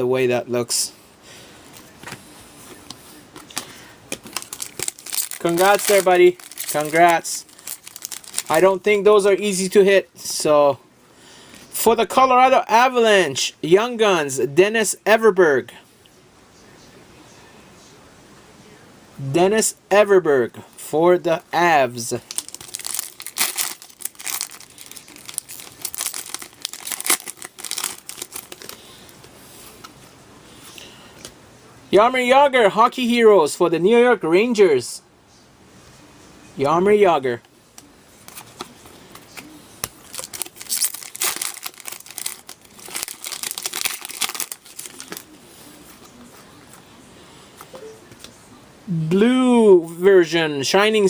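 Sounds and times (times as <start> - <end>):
card packaging crinkling: 3.3 - 8.9, 22.1 - 29.0, 38.2 - 45.4.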